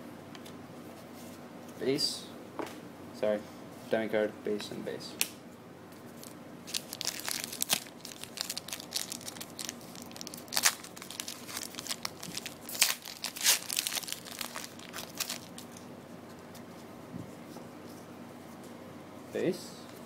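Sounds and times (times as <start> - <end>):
foil wrapper tearing and crinkling: 6.2 - 15.8.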